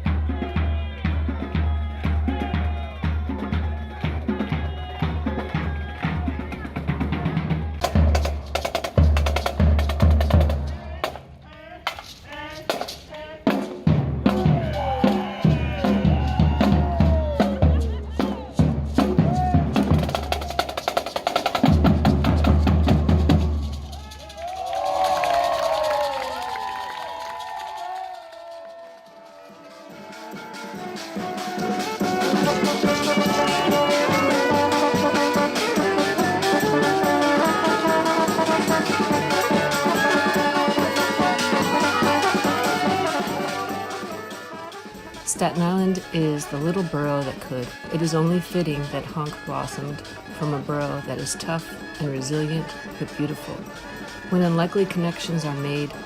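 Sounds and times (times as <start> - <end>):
percussion band drumming: 0.0 - 56.0
person speaking: 45.3 - 53.7.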